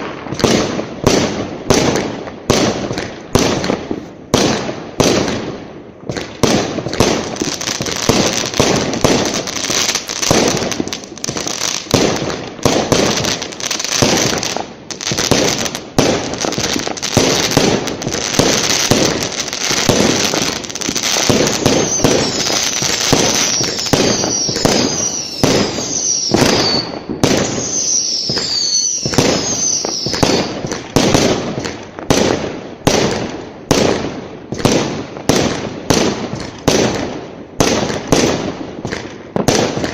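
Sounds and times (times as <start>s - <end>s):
fireworks bangs and crackling: 0.0s - 39.9s
short falling whistles: 23.4s - 27.0s, 27.6s - 30.5s.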